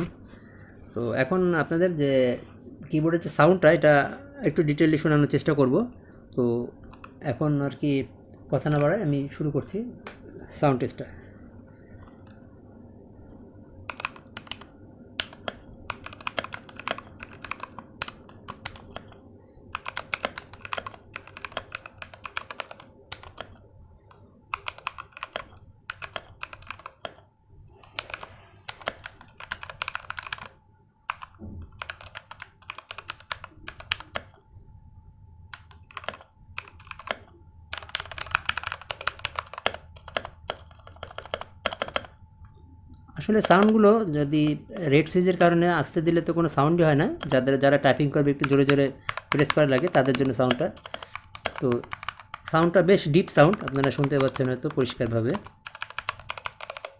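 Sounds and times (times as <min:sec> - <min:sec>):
mechanical keyboard typing: 0:06.8 - 0:07.2, 0:08.6 - 0:09.1, 0:13.9 - 0:34.4, 0:35.5 - 0:42.2, 0:43.2 - 0:45.5, 0:47.1 - 0:56.9.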